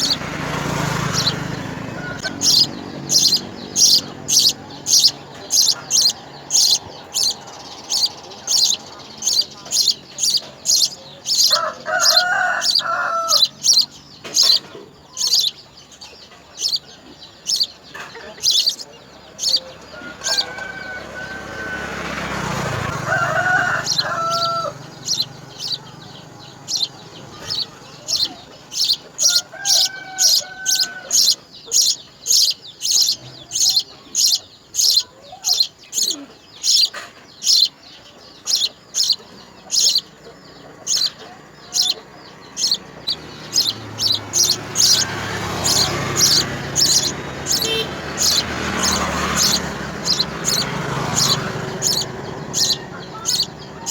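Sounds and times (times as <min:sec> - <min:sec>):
rooster crowing: 0:00.0 - 0:14.6, 0:19.4 - 0:34.3, 0:40.8 - 0:53.9
small bird chirping: 0:00.0 - 0:53.9
rushing noise: 0:42.6 - 0:53.9.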